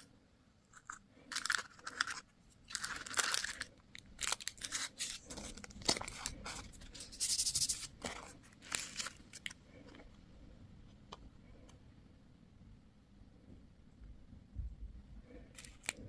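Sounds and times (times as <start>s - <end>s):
plastic packaging crinkling and tearing: 0.8s - 9.6s, 15.6s - 16.0s.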